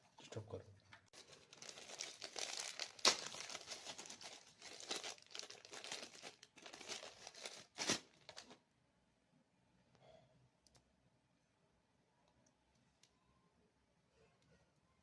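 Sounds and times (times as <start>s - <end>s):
plastic packaging crinkling: 1.1s - 8.6s
sharp plastic crackles: 1.2s - 8.6s.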